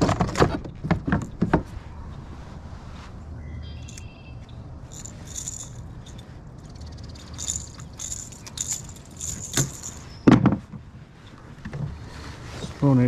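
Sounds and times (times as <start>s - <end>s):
fishing gear jingling and clicking: 4.8s - 10.2s.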